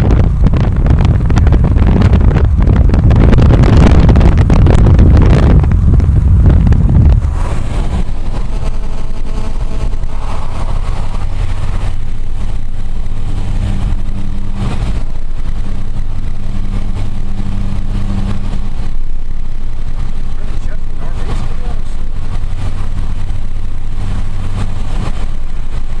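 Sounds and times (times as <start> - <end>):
car engine and road noise: 0.0 - 26.0
rushes of noise: 2.0 - 15.6.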